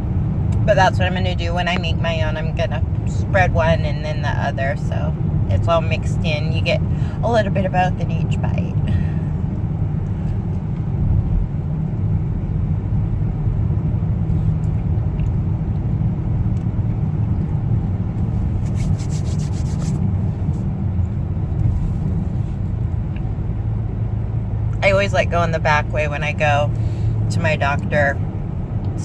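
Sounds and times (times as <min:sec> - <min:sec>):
car cabin road and engine rumble: 0:00.0 - 0:29.0.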